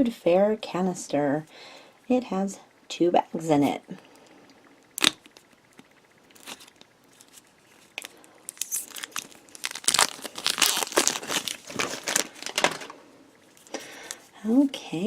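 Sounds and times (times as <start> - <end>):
plastic packaging crinkling: 6.3 - 14.3.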